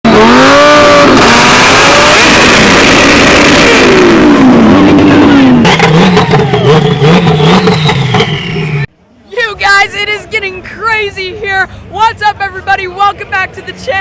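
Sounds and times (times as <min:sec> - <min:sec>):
car engines revving: 0:00.0 - 0:08.9
exhaust cracks: 0:00.1 - 0:08.9.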